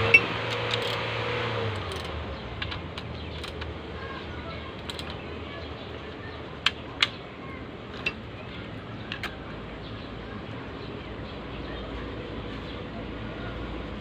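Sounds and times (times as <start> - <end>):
steady background noise: 0.0 - 14.0
metal parts clinking: 0.5 - 1.1, 1.8 - 3.7, 4.8 - 5.2, 7.9 - 8.3.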